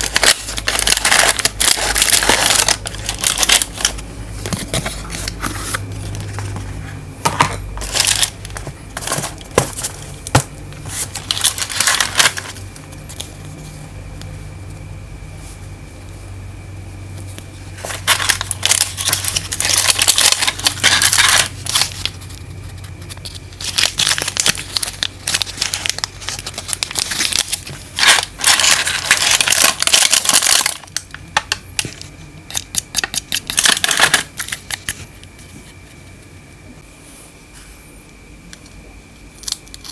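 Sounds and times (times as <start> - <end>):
packaging crinkling and tearing: 0.0 - 6.6, 7.8 - 13.3, 17.8 - 22.4, 23.0 - 35.0
faint low hum: 0.0 - 39.9.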